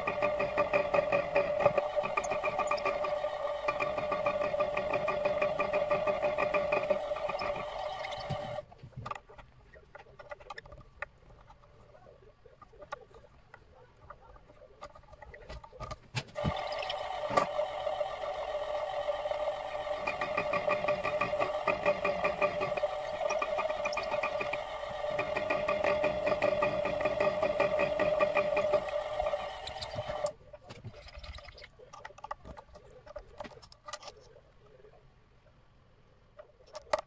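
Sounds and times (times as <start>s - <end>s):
milling machine humming: 0.0s - 8.6s, 16.4s - 30.3s.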